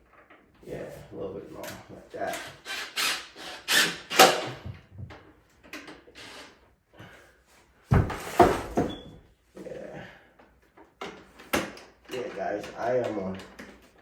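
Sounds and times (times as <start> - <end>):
door thumping against frame: 7.9 - 9.2.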